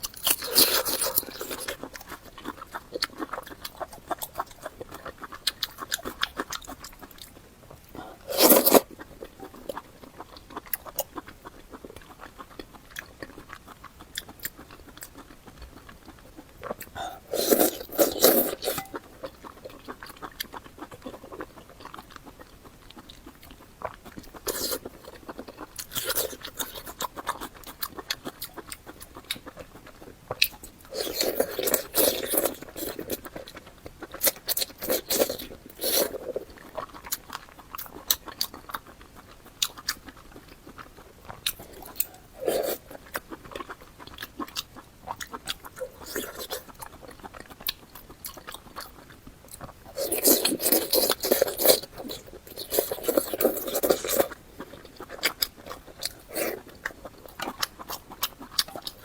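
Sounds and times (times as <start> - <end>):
crunchy chewing and biting: 0.0 - 59.0.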